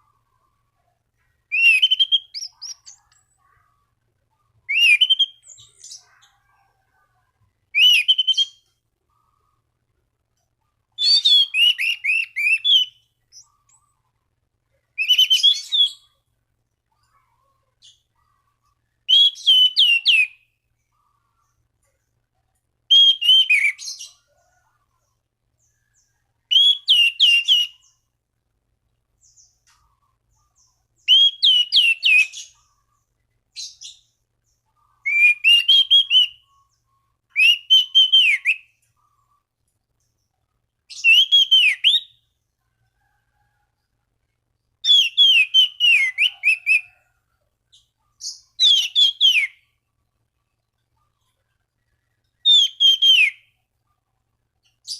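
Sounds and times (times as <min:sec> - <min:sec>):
thrush singing whistles: 0:01.5 - 0:03.0, 0:04.7 - 0:05.8, 0:07.7 - 0:08.7, 0:11.0 - 0:13.1, 0:15.0 - 0:16.1, 0:19.1 - 0:20.4, 0:22.9 - 0:24.0, 0:26.5 - 0:27.9, 0:31.0 - 0:32.6, 0:35.0 - 0:36.5, 0:37.3 - 0:38.7, 0:40.9 - 0:42.2, 0:44.8 - 0:46.8, 0:48.2 - 0:49.7, 0:52.4 - 0:53.6.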